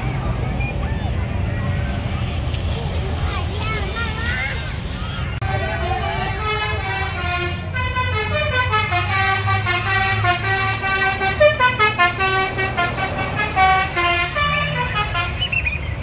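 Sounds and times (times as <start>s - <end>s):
bus engine rumble: 0.0s - 16.0s
bus musical horn melody: 5.4s - 15.6s.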